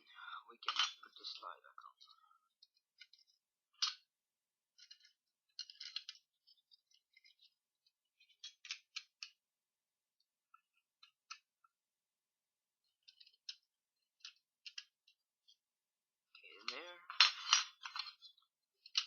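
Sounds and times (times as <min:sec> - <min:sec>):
pistol parts clicking and scraping: 0:12.9 - 0:15.6, 0:16.7 - 0:19.0.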